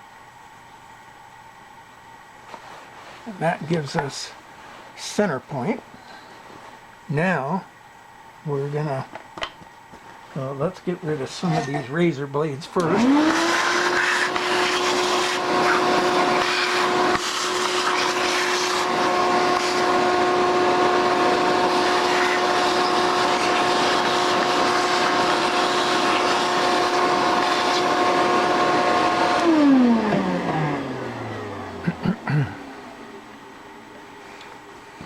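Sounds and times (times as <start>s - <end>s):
shop vacuum motor running: 11.1s - 34.2s.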